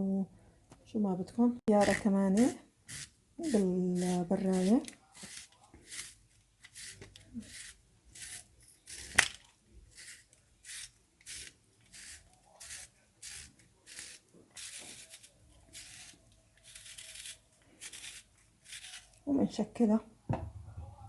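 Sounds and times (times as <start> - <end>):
spiral slicer scraping vegetable: 1.8 - 9.2, 9.9 - 19.2.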